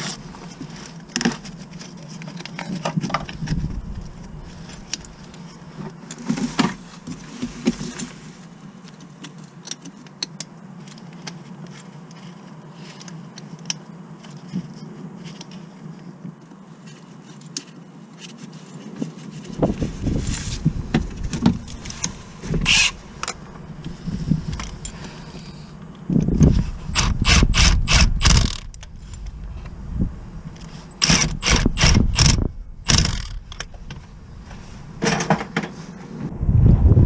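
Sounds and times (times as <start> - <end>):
ratchet-like metallic clicking: 27.0 - 28.8, 31.0 - 33.7.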